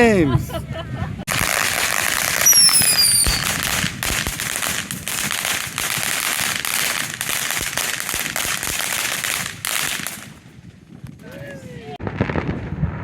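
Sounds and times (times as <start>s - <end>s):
fireworks crackling pops: 1.3s - 13.0s
falling firework whistle: 1.4s - 3.8s.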